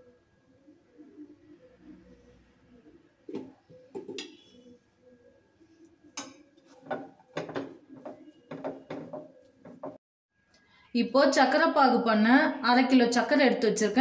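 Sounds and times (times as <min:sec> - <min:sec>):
kitchen utensils clinking and knocking: 0:06.2 - 0:10.0.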